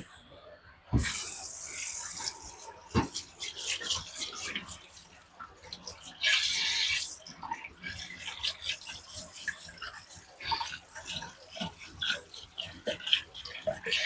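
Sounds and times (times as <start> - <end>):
water splashing over whetstone: 1.0 - 14.0.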